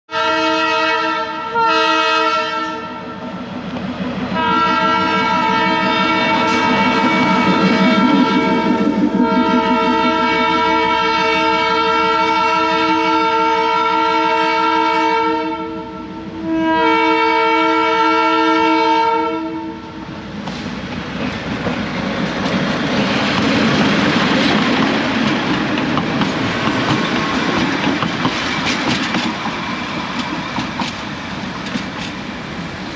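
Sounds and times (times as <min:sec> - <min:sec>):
locomotive horn blasts: 0:00.1 - 0:03.2, 0:04.3 - 0:20.0
train wheels clattering on rails: 0:03.1 - 0:13.1, 0:20.2 - 0:32.9.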